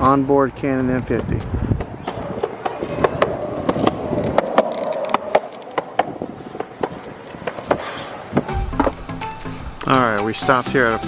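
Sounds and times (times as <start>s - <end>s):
skateboard wheels rolling on concrete: 0.0s - 11.0s
skateboard wheels clacking: 1.1s - 9.0s.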